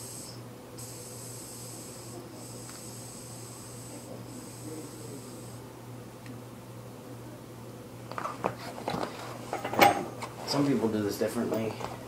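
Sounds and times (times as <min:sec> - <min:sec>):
air hissing out of tyre valve: 0:00.0 - 0:05.6.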